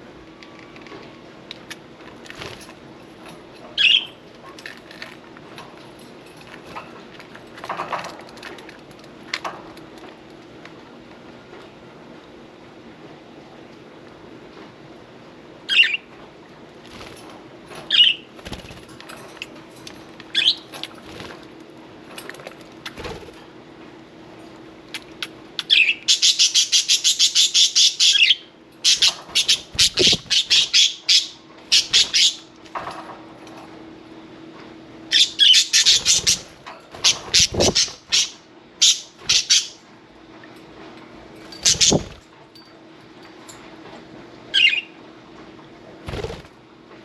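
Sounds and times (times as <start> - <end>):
budgerigars chirping: 25.6 - 32.4, 35.1 - 39.8, 41.6 - 42.1
rapid wing flapping: 46.0 - 46.6.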